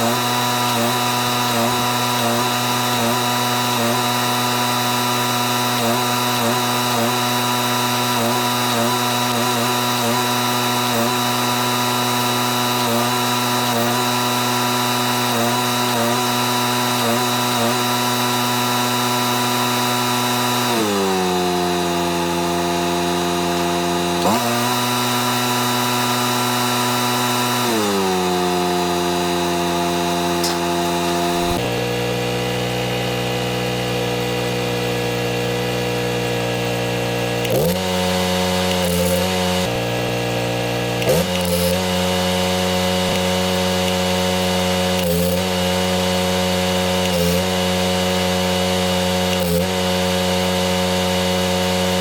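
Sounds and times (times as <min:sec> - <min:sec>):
welding machine engine running: 0:00.0 - 0:52.0.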